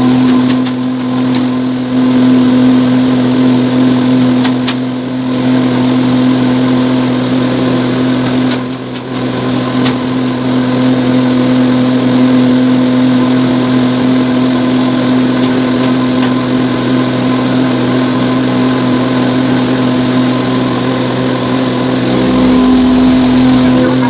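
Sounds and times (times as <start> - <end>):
vehicle engine humming steadily: 19.4 - 24.0.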